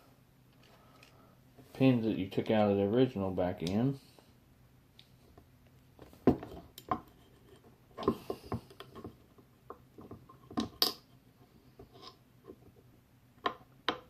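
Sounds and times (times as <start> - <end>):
small hard clicks and knocks: 5.4 - 11.2, 11.8 - 14.0.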